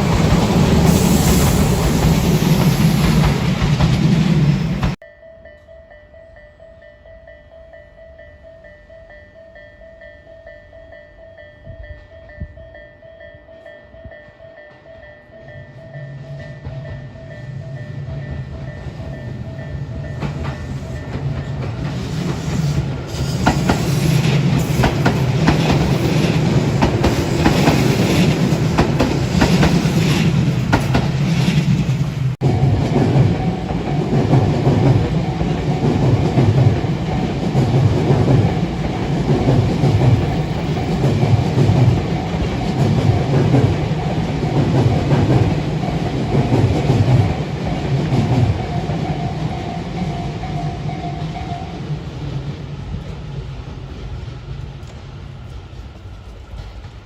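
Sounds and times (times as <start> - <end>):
train wheels clicking over rail joints: 0.0 - 5.0, 16.2 - 51.4, 54.6 - 57.0
electric train passing: 0.0 - 57.0.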